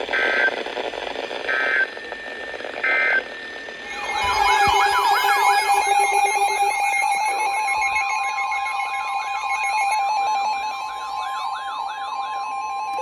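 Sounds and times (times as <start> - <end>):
steady beeping tones: 2.8 - 13.0
fast warbling alert tone: 3.9 - 8.4.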